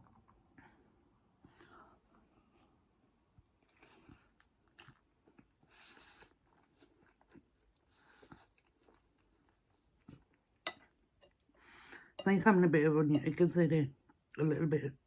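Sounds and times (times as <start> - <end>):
person chewing food: 1.4 - 12.2.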